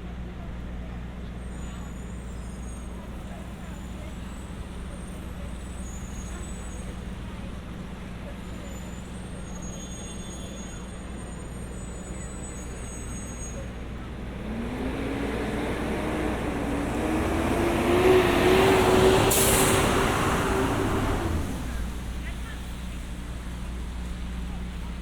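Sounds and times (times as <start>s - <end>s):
heavy vehicle engine accelerating: 11.2s - 25.0s
air brake hiss: 18.4s - 22.2s.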